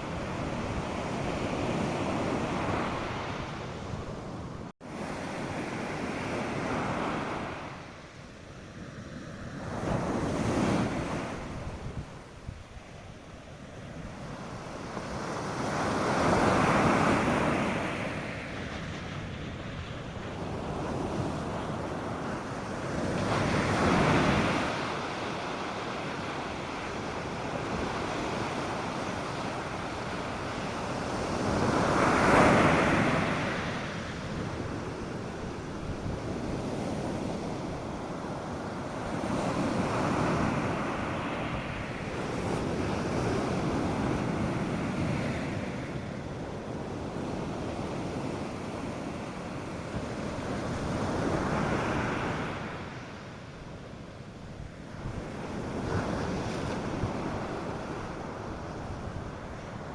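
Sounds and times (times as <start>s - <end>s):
waves washing onto a beach: 0.0s - 59.9s.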